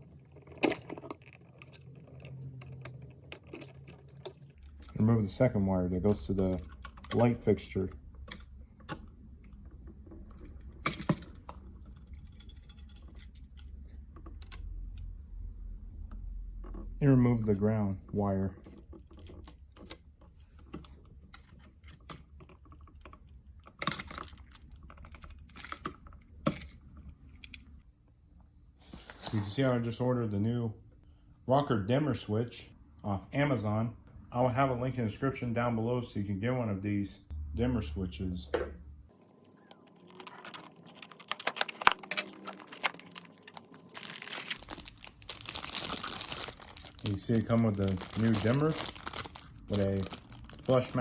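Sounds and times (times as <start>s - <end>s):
packaging crinkling: 39.8s - 51.0s.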